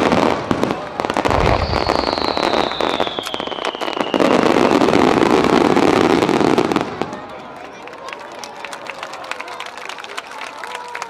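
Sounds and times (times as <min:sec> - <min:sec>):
dense loud crackling: 0:00.0 - 0:06.3
fireworks cracking and popping: 0:00.0 - 0:07.3
firework whistle falling in pitch: 0:01.3 - 0:04.9.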